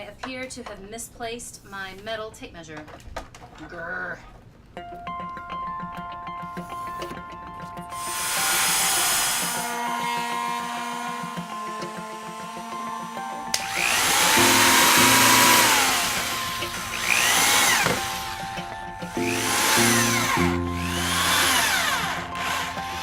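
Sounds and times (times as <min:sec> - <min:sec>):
background music: 0:04.7 - 0:23.0
power tool spinning up and down: 0:08.0 - 0:23.0.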